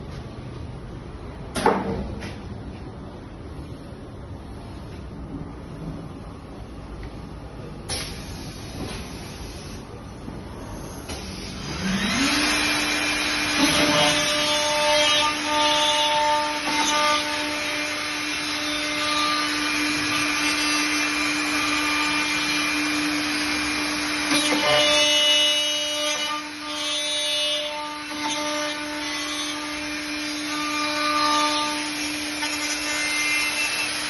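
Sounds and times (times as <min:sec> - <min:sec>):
cutter milling: 0:11.0 - 0:34.0.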